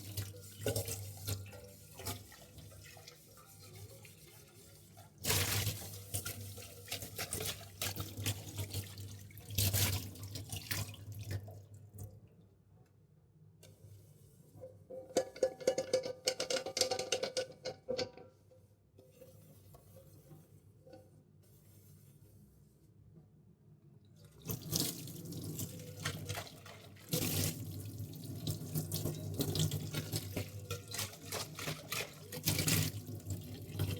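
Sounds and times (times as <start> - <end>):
tap water splashing in a sink: 0.0 - 12.3, 24.2 - 33.9.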